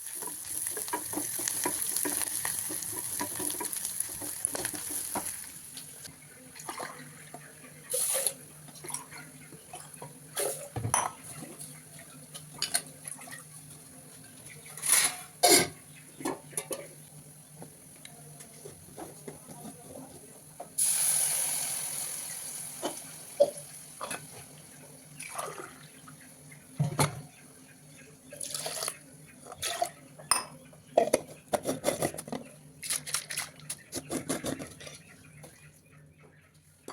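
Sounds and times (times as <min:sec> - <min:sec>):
pots and pans clattering: 0:00.1 - 0:05.5, 0:06.6 - 0:11.6, 0:14.7 - 0:17.0, 0:26.8 - 0:27.3, 0:29.5 - 0:35.0.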